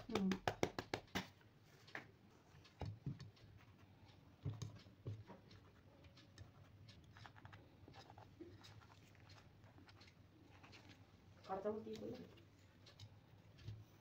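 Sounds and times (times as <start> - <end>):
light ticks: 8.6 - 14.0.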